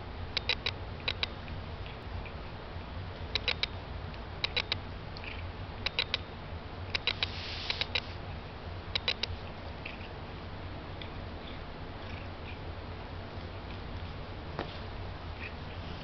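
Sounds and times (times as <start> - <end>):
steady low hum: 0.0 - 16.0
sharp clicks: 0.4 - 1.4, 3.3 - 6.2, 6.9 - 8.1, 8.9 - 10.0.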